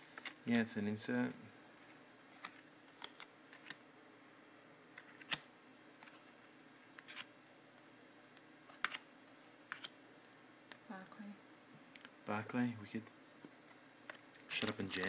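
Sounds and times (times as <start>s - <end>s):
trading cards flipped by hand: 1.8s - 3.8s, 5.0s - 7.3s, 8.6s - 10.0s, 14.1s - 15.0s.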